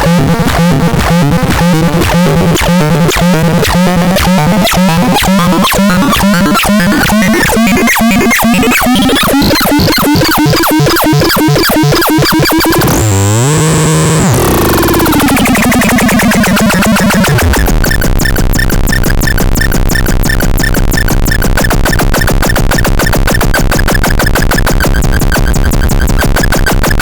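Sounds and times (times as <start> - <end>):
low synth bass tone: 0.0 - 27.0
synthesizer electronic pulses: 0.0 - 27.0.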